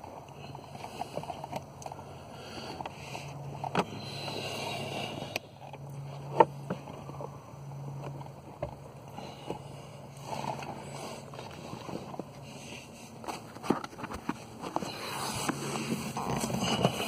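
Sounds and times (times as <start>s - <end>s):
steady low hum: 0.0s - 17.0s
knocks and rubbing of blower motor: 6.1s - 17.0s.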